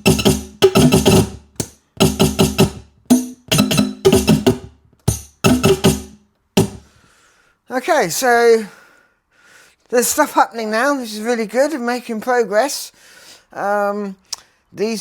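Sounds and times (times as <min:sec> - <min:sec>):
drum machine beats: 0:00.0 - 0:06.9.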